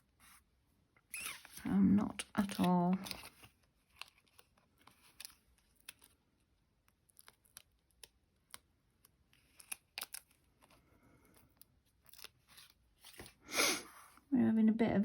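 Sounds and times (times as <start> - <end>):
paper and card rustling clicks: 1.2 - 6.2.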